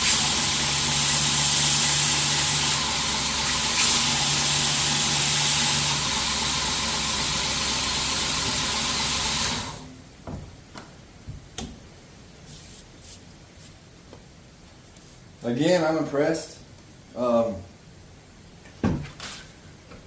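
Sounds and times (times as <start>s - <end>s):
machine humming and hissing: 0.0s - 10.0s.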